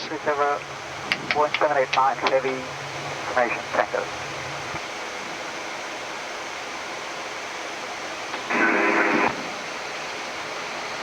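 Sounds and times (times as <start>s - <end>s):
radio static burst: 8.4s - 9.6s.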